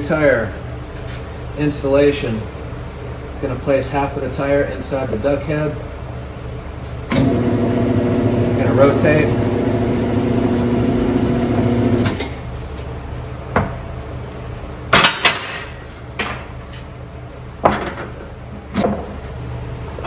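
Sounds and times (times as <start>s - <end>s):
turntable motor humming: 7.1s - 12.5s.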